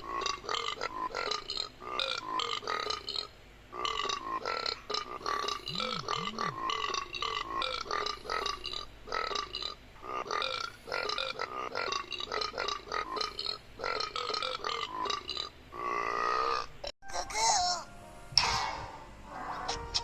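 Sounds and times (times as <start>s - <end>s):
person burping: 5.2s - 7.0s.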